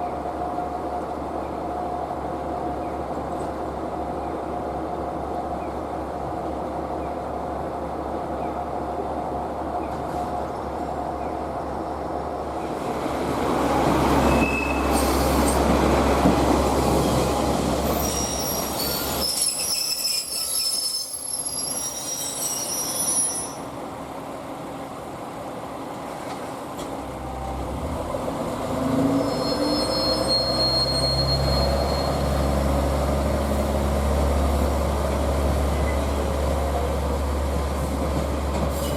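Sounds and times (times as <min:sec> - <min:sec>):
train wheels rumbling on rails: 0:00.0 - 0:38.9
metallic wheel squealing: 0:17.8 - 0:23.6, 0:29.1 - 0:32.4.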